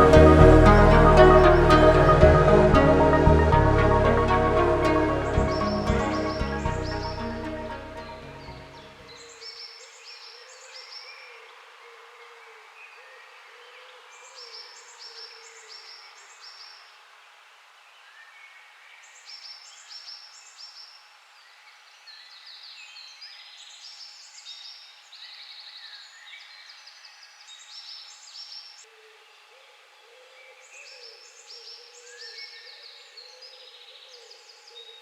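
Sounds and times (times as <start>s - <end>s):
low wavering bird call: 0.0s - 9.0s
wild birds singing: 3.8s - 17.0s, 18.0s - 35.0s.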